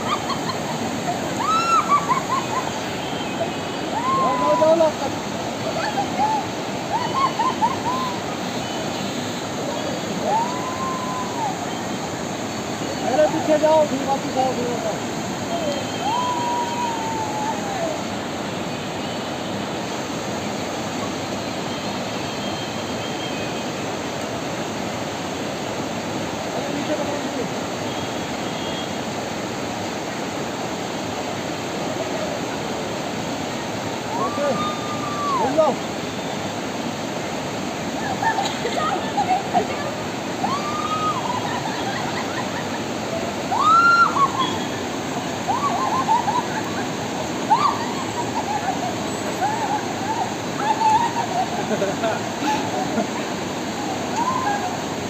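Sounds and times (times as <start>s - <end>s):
river water rushing: 0.0s - 55.0s
high-pitched calls: 43.4s - 51.6s.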